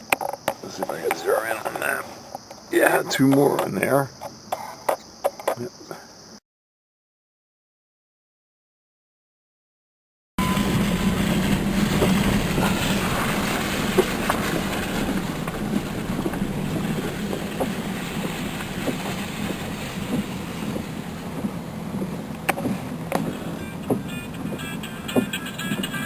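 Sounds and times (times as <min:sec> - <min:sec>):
low mechanical hum: 0:10.4 - 0:26.0.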